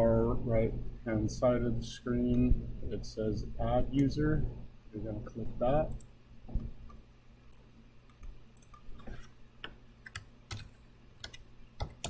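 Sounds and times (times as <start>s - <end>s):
computer keyboard and mouse clicks: 8.1s - 12.0s.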